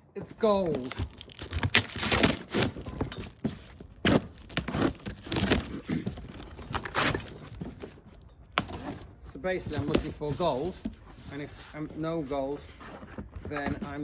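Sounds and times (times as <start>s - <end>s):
cardboard crumpling and rustling: 0.4s - 14.0s
cardboard knocks and tears: 0.5s - 9.1s.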